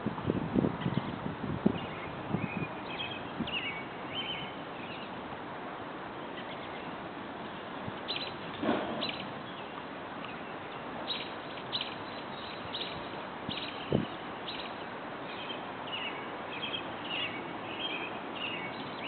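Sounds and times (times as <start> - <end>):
steady background hiss: 0.0 - 19.0
high bird chirps: 8.1 - 19.0.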